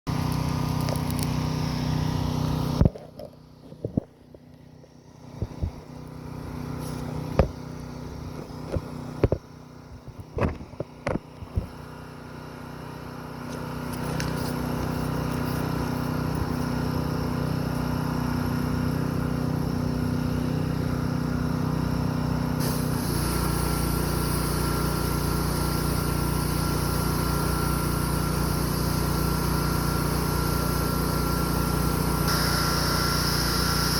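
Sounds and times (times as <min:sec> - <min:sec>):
pressure washer engine running: 0:00.1 - 0:33.9
hiss: 0:22.6 - 0:33.9.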